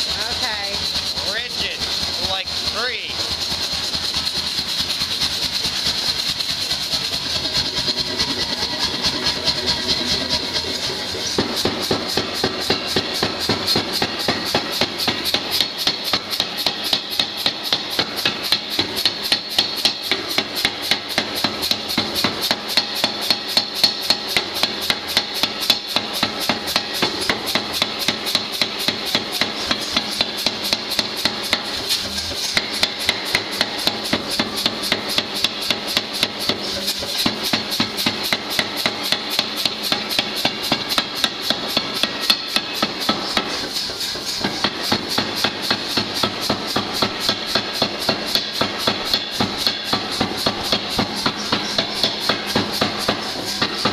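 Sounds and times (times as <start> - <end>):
hammer forging steel: 0.0 - 53.9.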